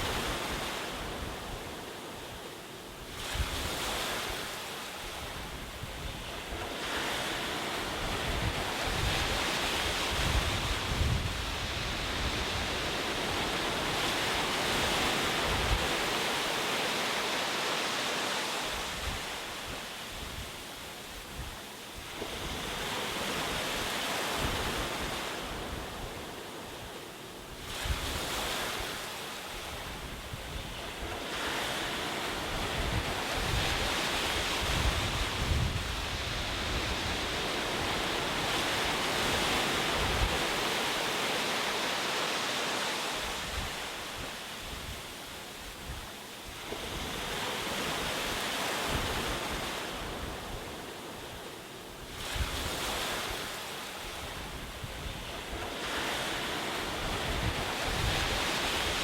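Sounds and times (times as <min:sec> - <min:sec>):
ocean waves breaking: 0:00.0 - 0:20.2, 0:27.6 - 0:54.4.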